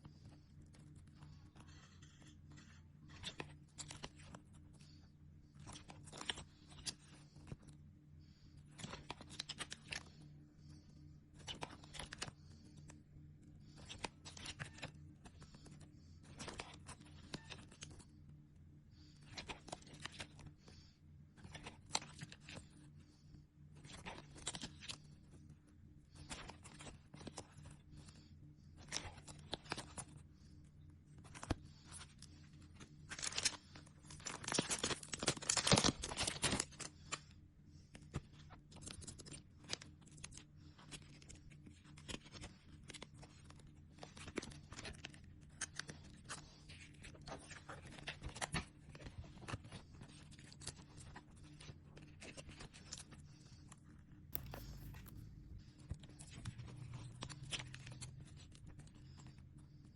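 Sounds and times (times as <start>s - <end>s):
faint steady hum: 0.0s - 59.9s
plastic packaging crinkling: 54.4s - 58.5s.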